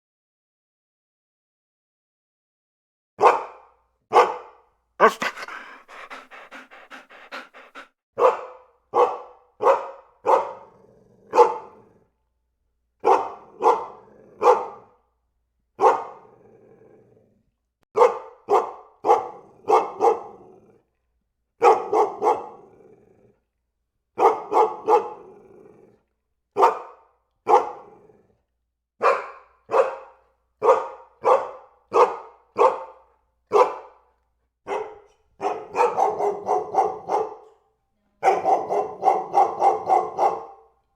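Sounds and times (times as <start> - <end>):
dog barking: 3.2 - 10.7, 11.3 - 11.8, 13.0 - 14.9, 15.8 - 16.3, 18.0 - 20.5, 21.6 - 22.6, 24.2 - 25.2, 26.6 - 28.0, 29.0 - 37.6, 38.2 - 40.8
dog growling: 5.0 - 7.9, 22.5 - 23.4, 25.1 - 26.1.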